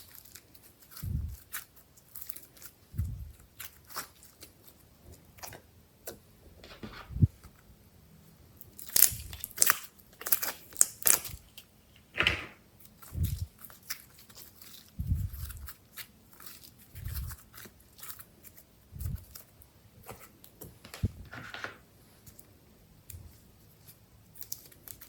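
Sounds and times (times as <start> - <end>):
slime squished by hand: 8.8 - 11.6.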